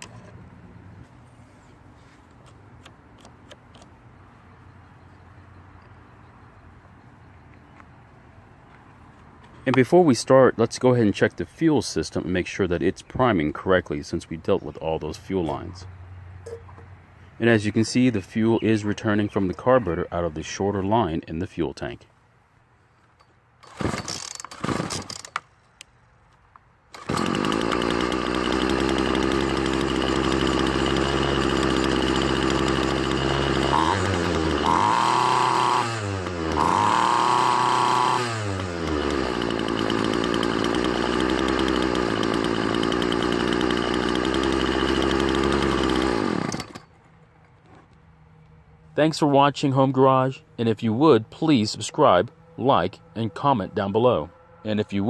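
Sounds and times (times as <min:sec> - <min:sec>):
starter cord pulls: 0:23.6 - 0:25.5, 0:26.9 - 0:46.9
string trimmer engine running: 0:26.9 - 0:46.9.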